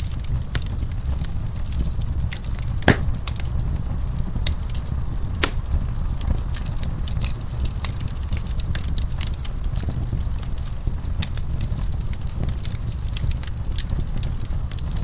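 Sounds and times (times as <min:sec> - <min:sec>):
low rumble of flames: 0:00.0 - 0:15.0
wood fire crackling: 0:00.0 - 0:15.0
sharp pops and snaps: 0:02.9 - 0:03.2, 0:05.4 - 0:05.8.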